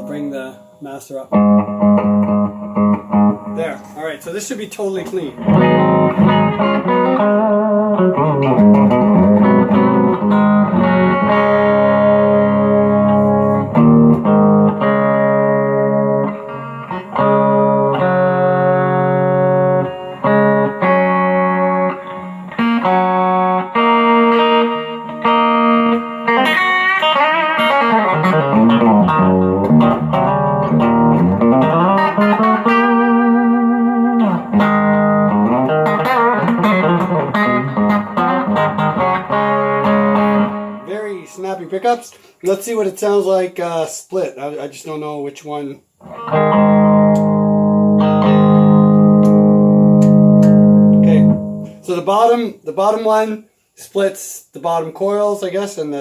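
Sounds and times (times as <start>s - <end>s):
clean electric guitar: 0.0s - 4.4s, 5.0s - 42.4s, 45.9s - 52.0s.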